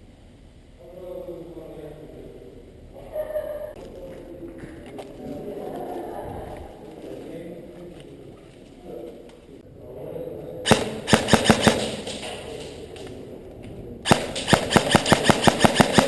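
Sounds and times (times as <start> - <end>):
airsoft gun firing: 10.7 - 12.5, 14.1 - 16.0.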